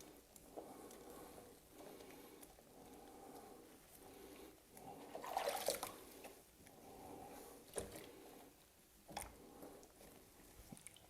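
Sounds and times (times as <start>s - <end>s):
water sloshing and squishing: 4.8s - 6.4s.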